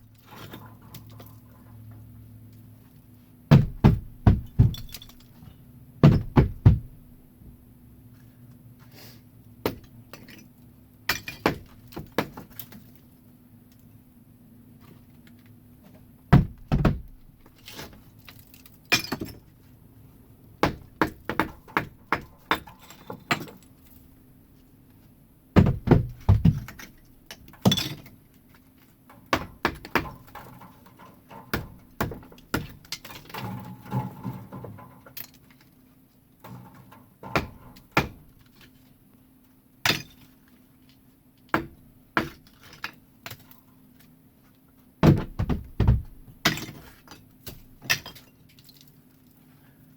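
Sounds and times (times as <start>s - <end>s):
bricks knocked and thudding: 3.5s - 5.3s, 6.0s - 7.0s, 9.6s - 10.4s, 11.1s - 12.6s, 16.3s - 18.0s, 20.6s - 23.6s, 25.6s - 28.2s, 29.3s - 34.9s, 36.5s - 38.4s, 41.5s - 43.4s, 45.0s - 48.3s.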